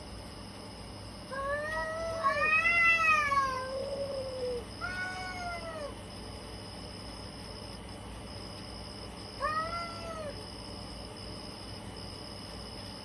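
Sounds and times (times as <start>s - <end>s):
cats yowling: 1.3s - 6.0s, 9.4s - 10.4s.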